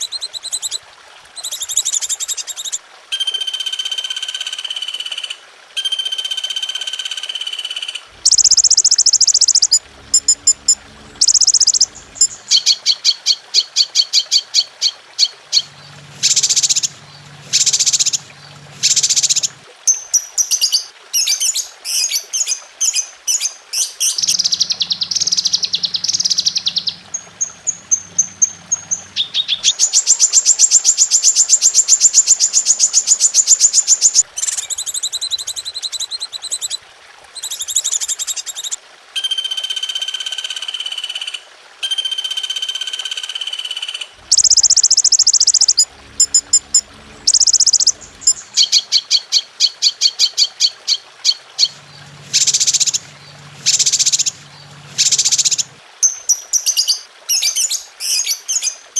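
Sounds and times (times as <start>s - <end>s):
low buzzing: 8.1s - 12.6s, 15.5s - 19.7s, 24.2s - 29.7s, 44.2s - 48.6s, 51.7s - 55.8s
bird songs and calls: 8.1s - 36.8s, 43.4s - 58.9s.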